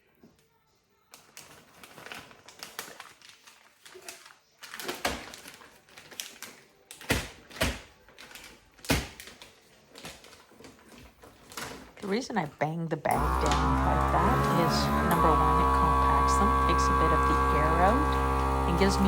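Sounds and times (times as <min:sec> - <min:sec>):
plastic bag crinkling: 0:01.1 - 0:12.5.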